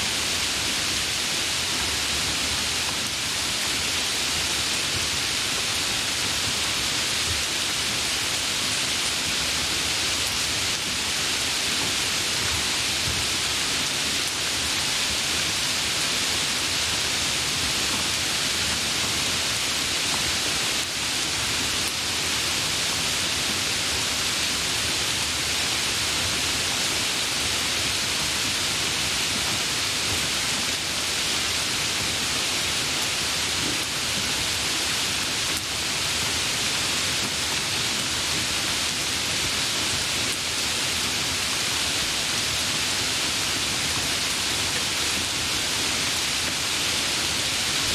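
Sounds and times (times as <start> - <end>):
heavy rain: 0.0 - 47.9.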